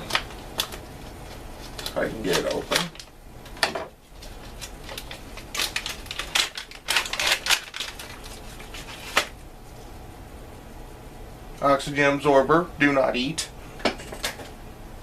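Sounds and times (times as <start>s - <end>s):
plastic pouch crinkling: 4.1s - 9.4s.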